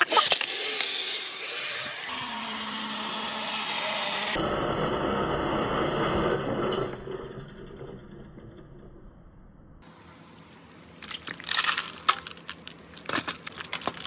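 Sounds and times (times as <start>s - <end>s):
low rumble: 3.6s - 10.0s
marbles rolling and rattling: 11.0s - 14.0s.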